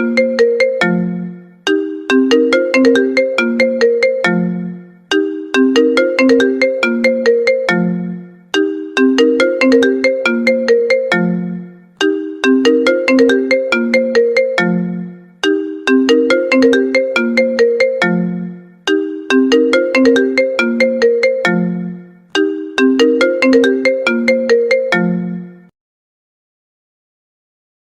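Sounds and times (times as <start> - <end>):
phone ringtone melody: 0.0 - 25.7.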